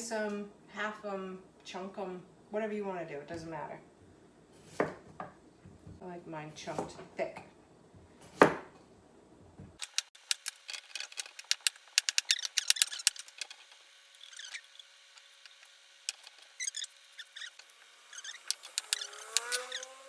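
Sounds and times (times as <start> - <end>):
knife chopping on cutting board: 4.6 - 5.4, 6.6 - 7.0, 8.2 - 8.8.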